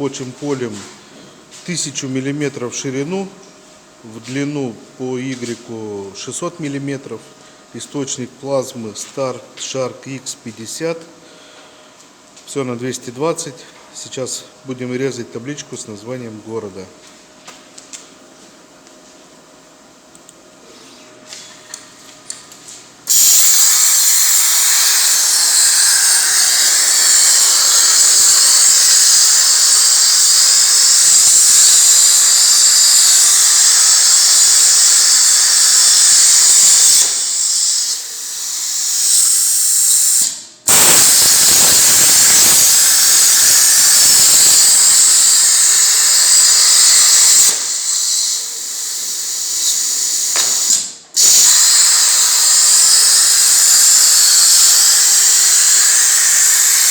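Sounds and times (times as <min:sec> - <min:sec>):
plasma torch cutting metal hiss: 0:23.1 - 0:56.9.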